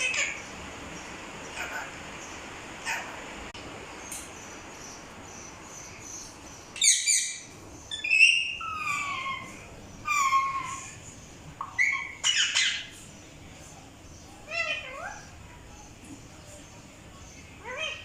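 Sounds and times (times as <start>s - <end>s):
parrot calling: 0.0s - 0.6s, 1.4s - 3.2s, 6.7s - 13.0s, 14.4s - 15.4s, 17.6s - 18.0s.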